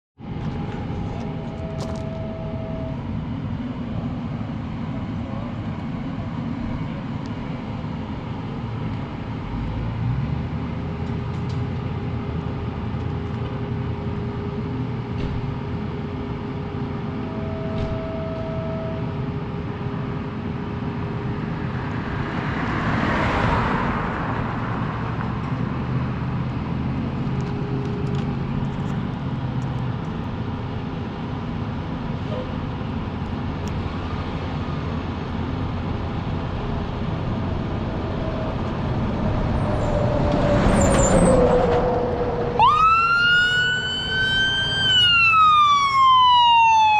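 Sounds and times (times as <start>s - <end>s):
road traffic engines: 0.2s - 46.9s
vehicle passing close by: 21.3s - 28.6s, 36.2s - 44.6s.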